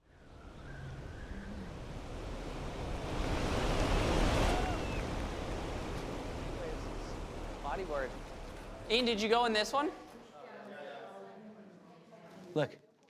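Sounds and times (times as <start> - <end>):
ocean surf breaking: 0.3 - 10.1.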